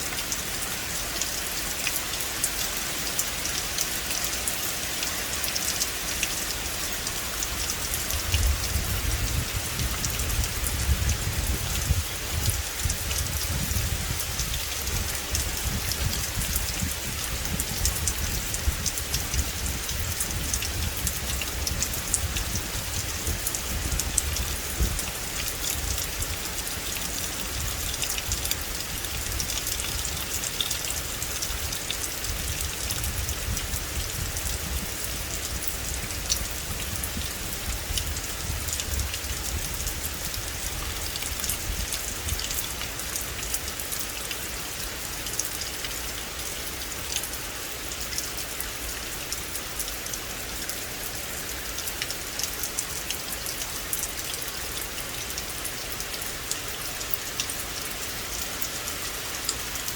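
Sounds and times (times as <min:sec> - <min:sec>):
raindrops ticking on leaves: 0:00.0 - 0:59.9
steady rain hiss: 0:00.0 - 0:59.9.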